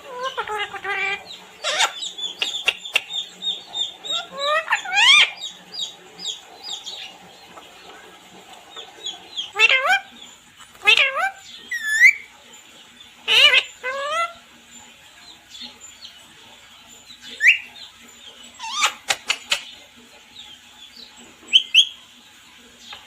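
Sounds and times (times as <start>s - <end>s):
parrot calling: 0.0s - 7.2s, 9.0s - 12.3s, 13.2s - 14.5s, 17.1s - 19.8s, 21.5s - 22.0s.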